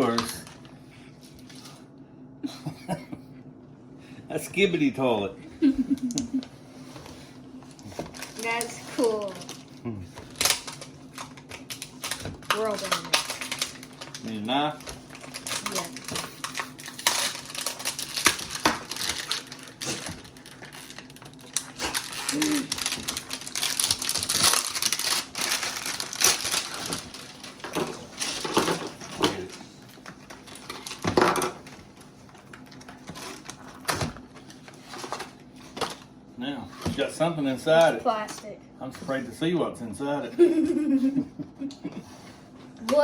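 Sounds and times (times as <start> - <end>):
packaging crinkling and rustling: 7.6 - 36.1
packaging clicks and scrapes: 10.2 - 31.8, 32.5 - 36.0.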